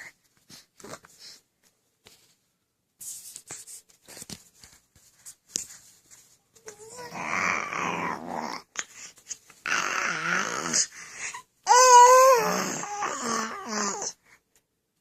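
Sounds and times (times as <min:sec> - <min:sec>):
baby vocalizing: 0:06.7 - 0:08.9, 0:09.6 - 0:14.2.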